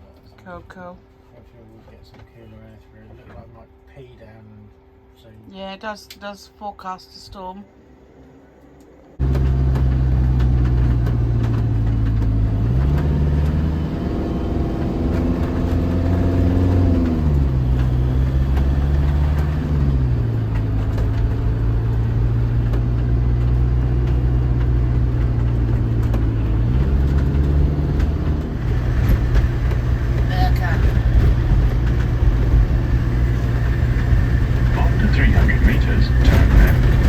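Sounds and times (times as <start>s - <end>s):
road noise: 7.8s - 37.0s
motorhome engine running: 9.2s - 37.0s.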